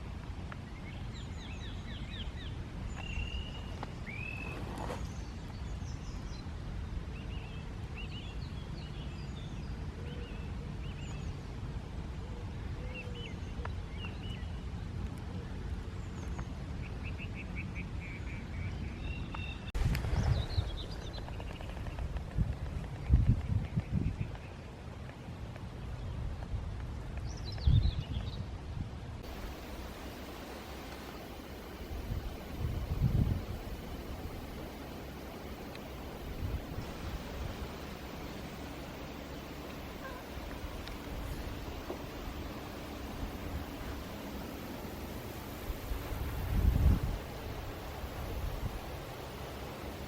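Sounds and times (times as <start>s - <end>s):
songbirds chirping and trilling: 29.2s - 50.0s
steady low rumble: 29.2s - 50.0s.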